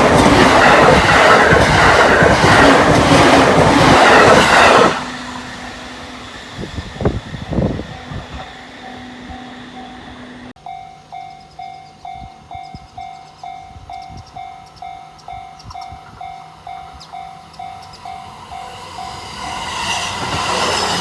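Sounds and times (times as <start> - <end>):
level crossing warning bell: 7.9 - 20.7.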